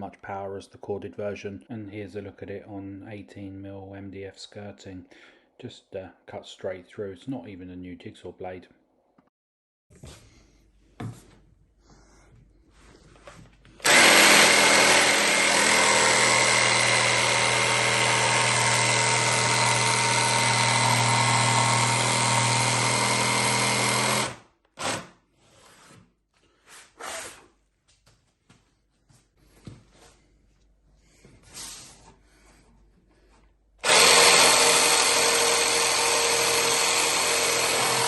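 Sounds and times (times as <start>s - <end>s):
jigsaw cutting wood: 13.8s - 25.2s, 33.8s - 38.0s.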